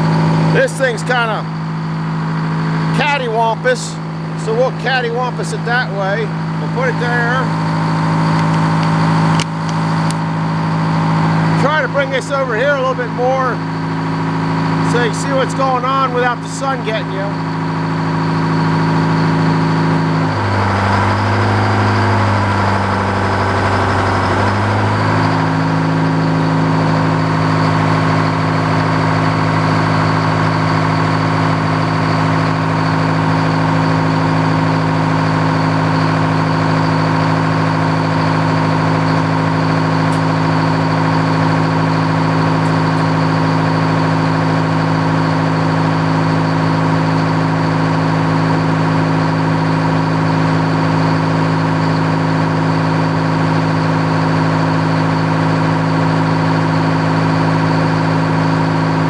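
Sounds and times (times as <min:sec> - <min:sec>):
sawmill engine running: 0:02.8 - 0:12.9, 0:18.3 - 0:46.7.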